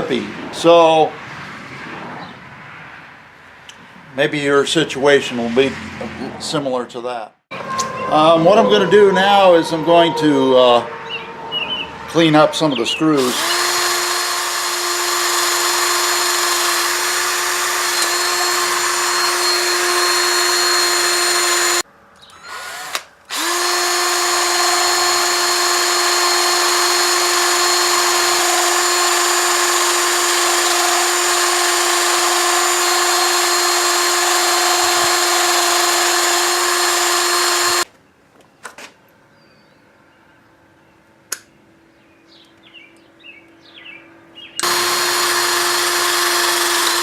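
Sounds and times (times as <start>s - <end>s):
electric power tool scrubbing: 13.2s - 21.8s, 22.5s - 37.9s, 44.6s - 47.0s.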